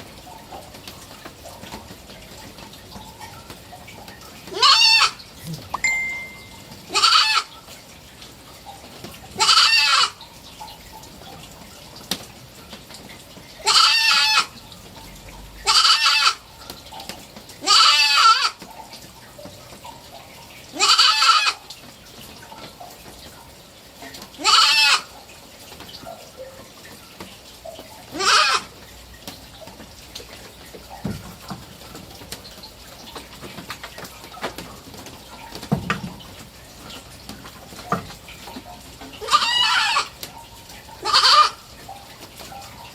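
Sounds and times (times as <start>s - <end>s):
goat kid bleating: 4.5s - 5.8s, 6.9s - 7.5s, 9.4s - 10.2s, 13.6s - 14.5s, 15.6s - 16.4s, 17.6s - 18.6s, 20.8s - 21.6s, 24.4s - 25.1s, 28.1s - 28.7s, 39.2s - 40.1s, 41.0s - 41.6s.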